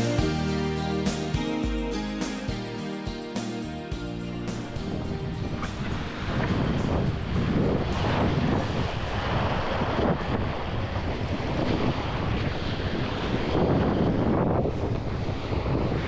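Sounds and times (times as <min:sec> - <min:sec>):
wind buffeting microphone: 0:04.8 - 0:16.0.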